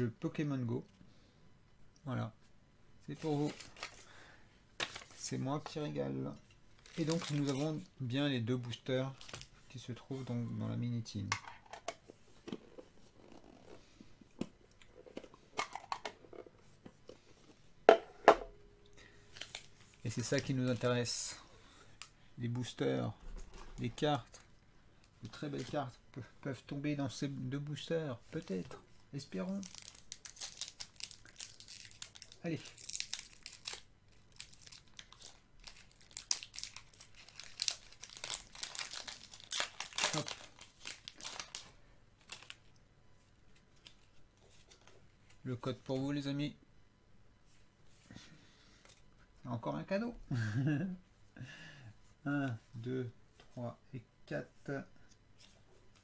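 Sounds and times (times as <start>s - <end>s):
foil wrapper crackling: 6.8s - 7.8s, 29.5s - 42.6s
packaging crinkling and clicking: 6.8s - 7.8s, 29.6s - 42.8s.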